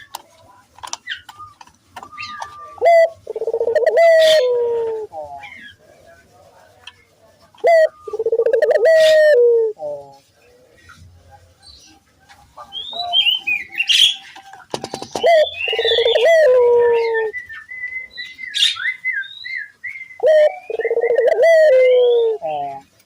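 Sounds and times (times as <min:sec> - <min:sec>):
small birds chirping: 0:00.0 - 0:23.0
doves cooing: 0:01.1 - 0:05.9, 0:07.6 - 0:11.4, 0:12.4 - 0:18.1, 0:20.1 - 0:22.9.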